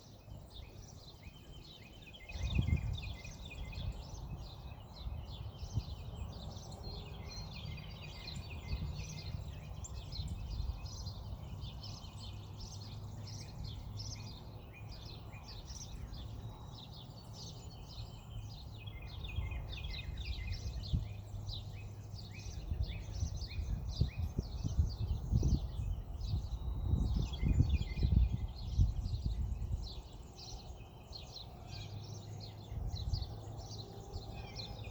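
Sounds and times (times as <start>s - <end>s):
small birds chirping: 0.0s - 34.9s
wind rumbling on microphone: 0.0s - 34.9s.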